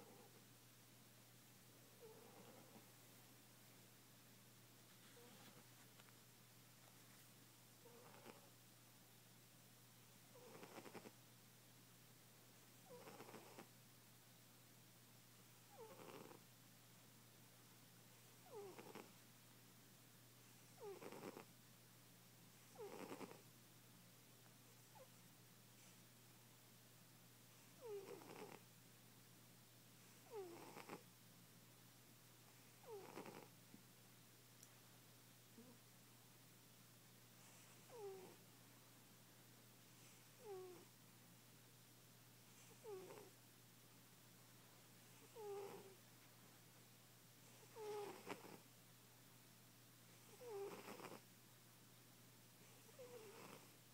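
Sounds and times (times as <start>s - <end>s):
cat snoring: 0.0s - 0.4s, 2.0s - 2.9s, 7.8s - 8.5s, 10.3s - 11.1s, 12.8s - 13.7s, 15.7s - 16.4s, 18.4s - 19.1s, 20.8s - 21.5s, 22.6s - 23.4s, 27.7s - 28.6s, 30.1s - 31.0s, 32.6s - 33.5s, 37.4s - 38.4s, 40.0s - 40.9s, 42.6s - 43.3s, 45.1s - 46.0s, 47.4s - 48.6s, 50.2s - 51.2s, 52.6s - 53.7s.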